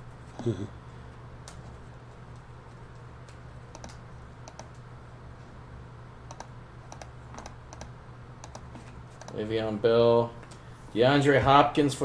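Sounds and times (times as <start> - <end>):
low electrical hum: 0.0 - 12.0
keyboard keystroke clicks: 3.7 - 4.8, 6.3 - 9.4.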